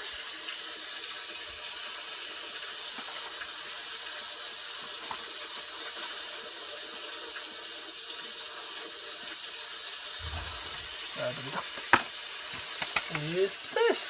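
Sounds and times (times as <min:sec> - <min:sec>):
steady rain hiss: 0:00.0 - 0:05.9, 0:09.2 - 0:14.0.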